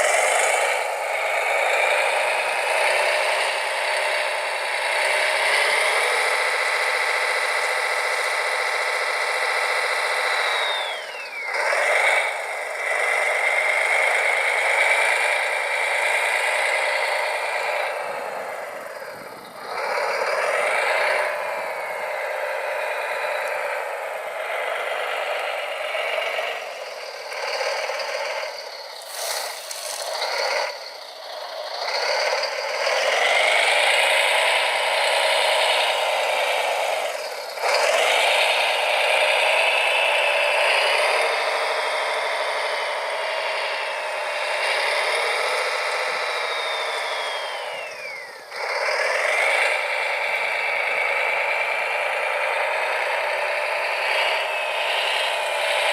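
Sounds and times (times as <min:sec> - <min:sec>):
small electric motors whining: 0:00.0 - 0:55.9
rattling and scraping: 0:29.0 - 0:31.0.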